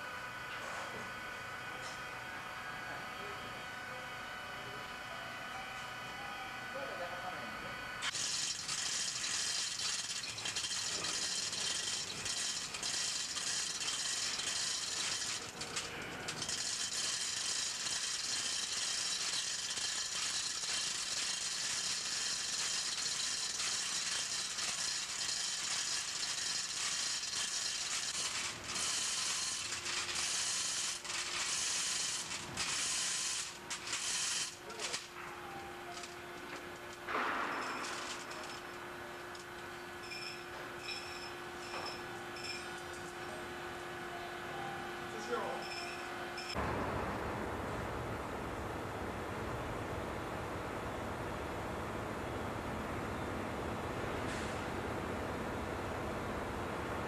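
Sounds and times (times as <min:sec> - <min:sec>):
mechanical ratchet rattling: 0:08.1 - 0:35.0.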